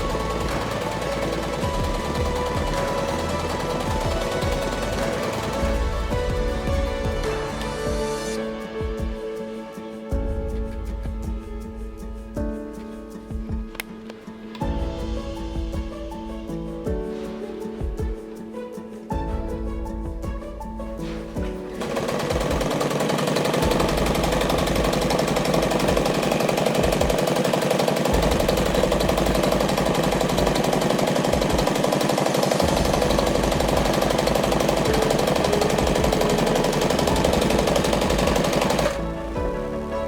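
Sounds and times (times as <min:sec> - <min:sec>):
sewing machine stitching: 0:00.0 - 0:08.4, 0:21.0 - 0:39.4
background music: 0:00.0 - 0:40.0.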